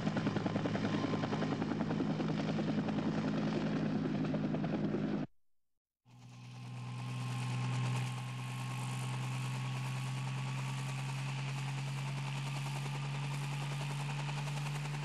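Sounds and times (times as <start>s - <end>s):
engine drone hum: 6.1s - 15.0s.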